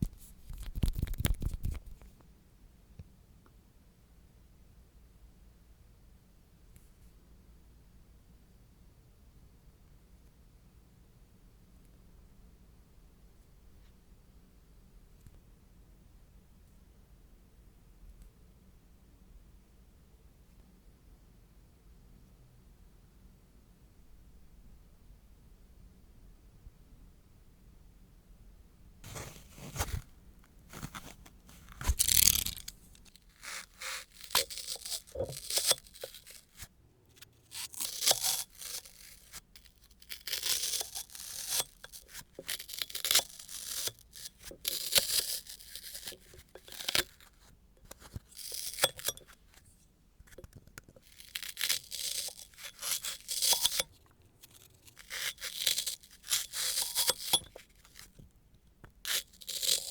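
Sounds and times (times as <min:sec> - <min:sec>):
nail file rasping: 0:30.7 - 0:36.7, 0:37.5 - 0:47.3, 0:47.9 - 0:49.3, 0:51.0 - 0:58.1, 0:59.1 - 0:59.9.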